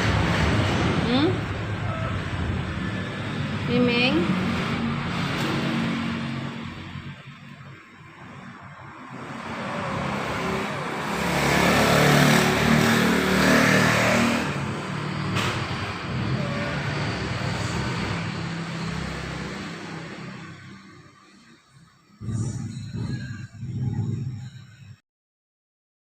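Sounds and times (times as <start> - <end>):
vehicle passing by: 0.0 - 21.6.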